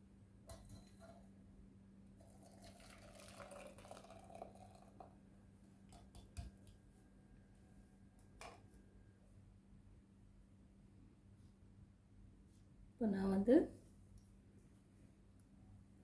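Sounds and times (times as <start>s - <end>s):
low electrical hum: 0.0s - 16.0s
liquid trickling through a strainer: 2.2s - 5.2s.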